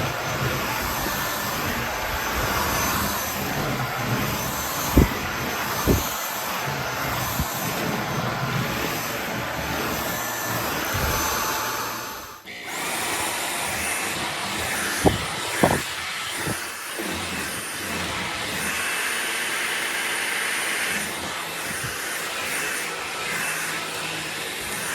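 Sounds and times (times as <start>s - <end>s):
stick vacuum cleaner running: 0.0s - 24.9s
short knocks: 5.8s - 6.2s, 15.0s - 16.6s.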